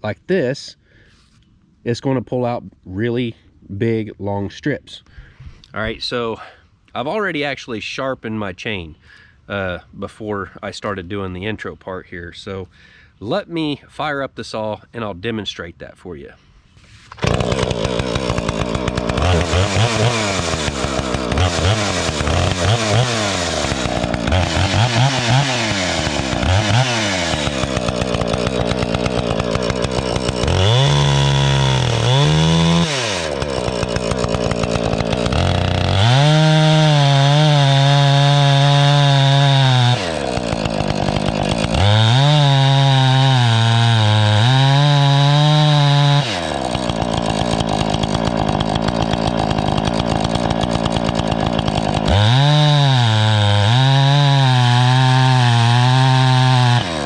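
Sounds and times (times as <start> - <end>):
chainsaw revving and cutting log: 16.9 - 57.0.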